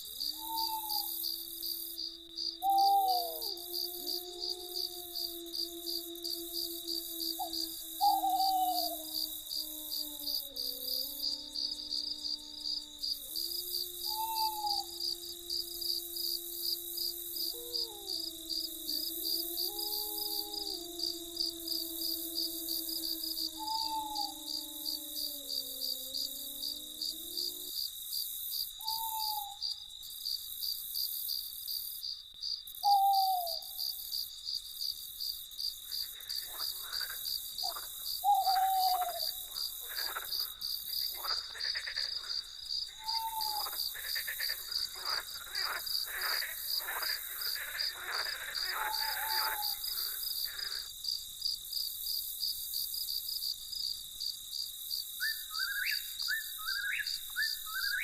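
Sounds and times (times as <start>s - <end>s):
owl hooting: 0.0s - 27.6s, 28.8s - 29.6s, 32.8s - 33.8s, 36.5s - 40.5s, 43.0s - 50.9s
crickets chirping: 0.0s - 58.0s
rapid night animal calls: 0.0s - 58.0s.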